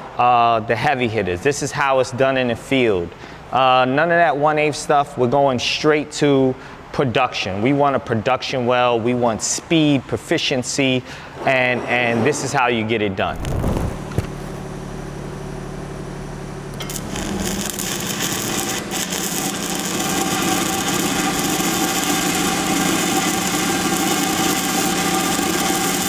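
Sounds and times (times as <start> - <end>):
grinder on steel pipe: 16.8 - 26.0.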